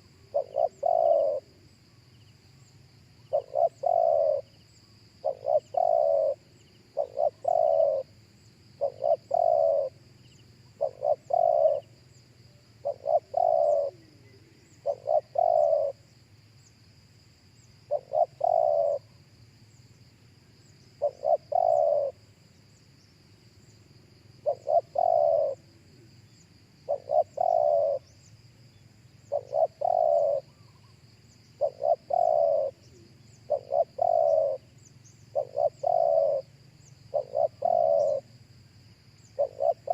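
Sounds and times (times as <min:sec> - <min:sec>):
dove cooing: 0:00.0 - 0:01.6, 0:03.3 - 0:04.6, 0:05.2 - 0:08.1, 0:08.8 - 0:10.0, 0:10.7 - 0:16.1, 0:17.9 - 0:19.1, 0:20.9 - 0:22.2, 0:24.4 - 0:28.2, 0:29.2 - 0:38.3, 0:39.2 - 0:39.9.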